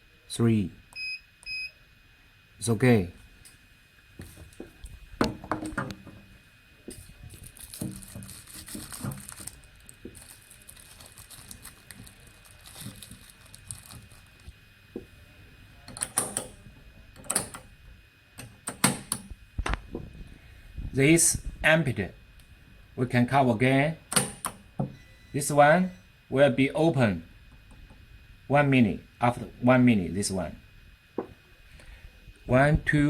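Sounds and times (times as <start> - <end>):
faint steady high tone: 24.9 - 26.2.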